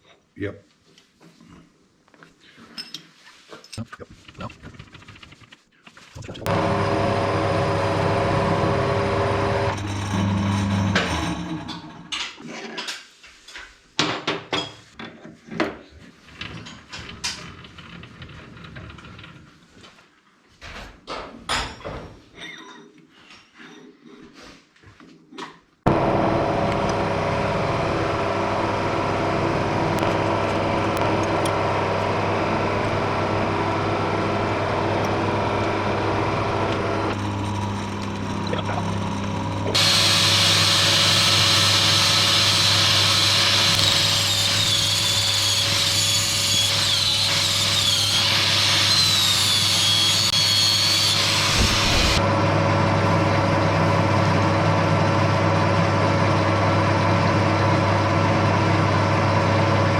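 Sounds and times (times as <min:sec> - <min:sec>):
lathe tool cutting metal: 0:06.5 - 0:12.1, 0:25.9 - 0:52.2
metalworking lathe humming: 0:06.5 - 0:12.1, 0:25.9 - 0:56.2.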